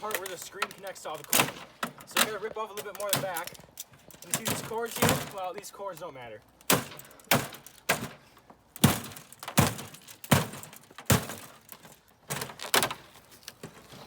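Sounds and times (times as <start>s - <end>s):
plastic panel cracking and breaking: 6.6s - 8.2s, 8.8s - 13.8s.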